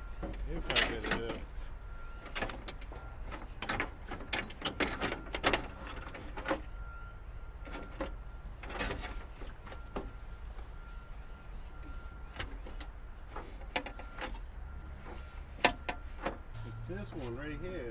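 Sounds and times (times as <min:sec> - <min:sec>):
hand tools clicking and knocking: 0:00.2 - 0:01.5.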